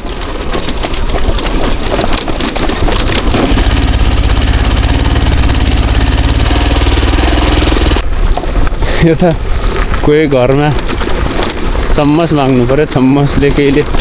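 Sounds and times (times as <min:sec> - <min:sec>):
motorcycle engine turning over: 0:00.1 - 0:08.7.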